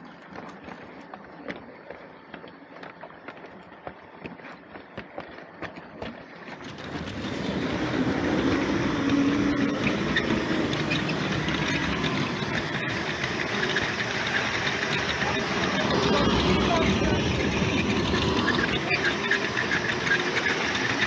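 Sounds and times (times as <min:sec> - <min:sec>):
train clicks on track: 0:05.0 - 0:21.0
train rumbling: 0:06.6 - 0:21.0.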